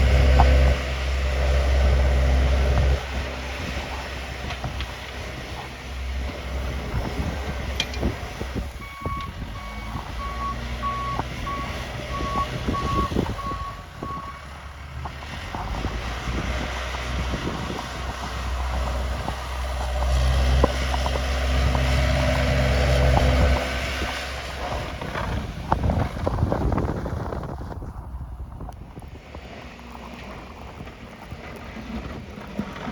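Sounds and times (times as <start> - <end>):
truck engine running: 0.0 - 32.9
truck reversing alarm beeping: 7.8 - 14.6.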